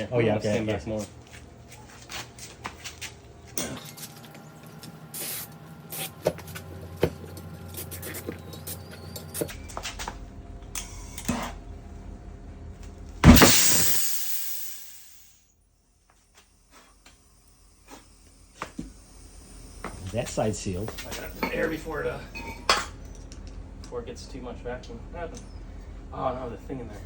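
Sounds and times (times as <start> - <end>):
aerosol sprays: 5.1 - 6.4.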